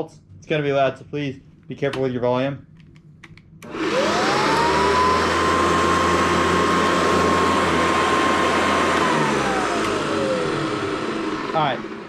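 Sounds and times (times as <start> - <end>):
vacuum cleaner motor whining: 3.6 - 12.0.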